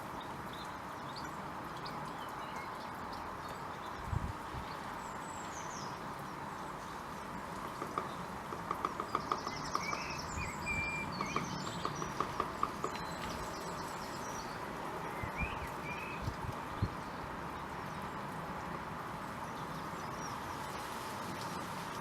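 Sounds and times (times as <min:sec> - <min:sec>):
small birds chirping: 0:00.0 - 0:22.0
bird tapping in nest box: 0:07.7 - 0:10.2, 0:11.1 - 0:13.4.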